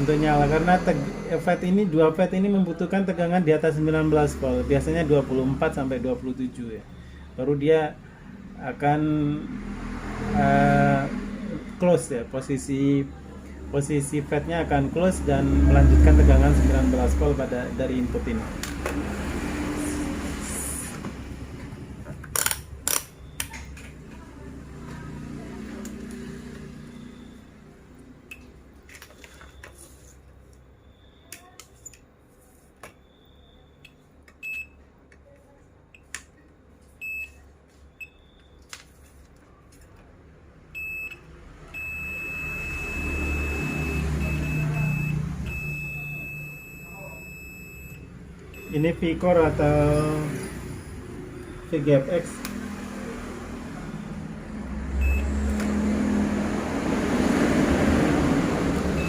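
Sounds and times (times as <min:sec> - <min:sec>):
multimeter beeping: 0:22.3 - 0:23.8, 0:32.8 - 0:34.8, 0:37.0 - 0:38.7, 0:40.8 - 0:50.1, 0:55.0 - 0:55.6.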